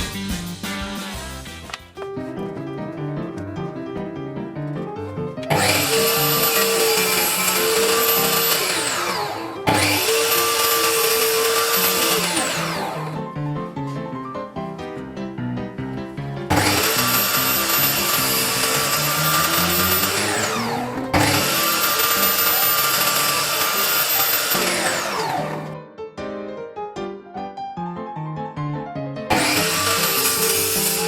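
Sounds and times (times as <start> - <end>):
background music: 0.0 - 31.0
table saw running: 5.2 - 13.3, 16.5 - 25.8, 29.3 - 31.0
saw winding down whine: 5.5 - 13.2, 16.5 - 25.8, 29.3 - 31.0.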